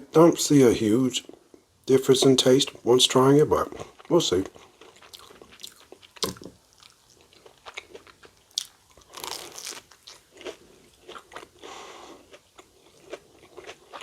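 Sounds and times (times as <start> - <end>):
crunching and chewing food: 3.6 - 14.0.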